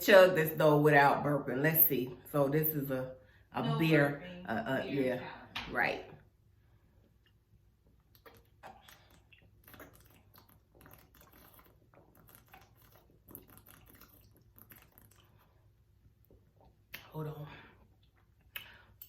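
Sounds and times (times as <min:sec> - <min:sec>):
gulping and swallowing: 0:08.0 - 0:15.7.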